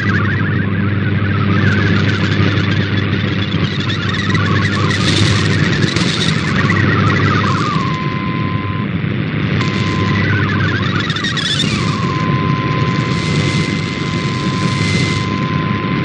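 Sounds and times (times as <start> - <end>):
warbling data tone: 0.0 - 8.9, 9.5 - 16.0
mains hum: 0.0 - 16.0
radio static: 1.2 - 16.0.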